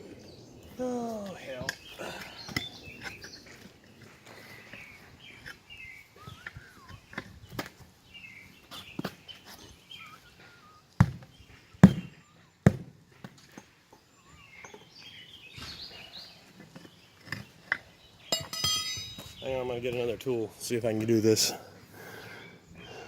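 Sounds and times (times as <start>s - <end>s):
birds chirping: 0.0s - 23.0s
hand tools knocking on tire bead: 17.3s - 19.4s.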